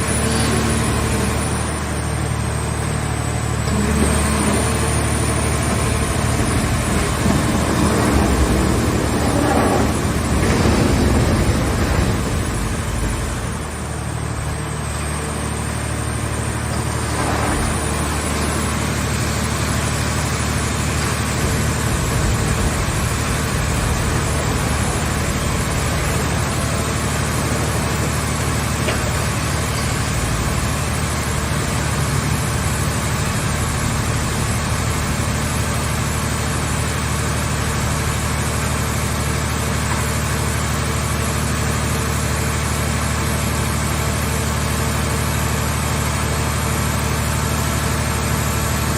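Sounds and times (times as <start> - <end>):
baler power unit humming: 0.0 - 37.9.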